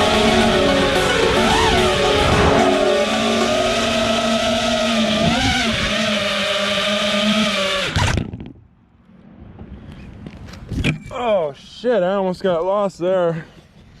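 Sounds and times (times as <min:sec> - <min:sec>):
drone motors whining: 0:00.0 - 0:08.2.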